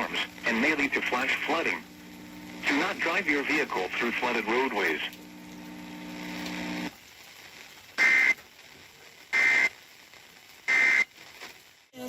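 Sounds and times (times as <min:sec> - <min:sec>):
low steady hum: 0:00.0 - 0:06.9
digital data tone bursts: 0:08.0 - 0:08.4, 0:10.7 - 0:11.0.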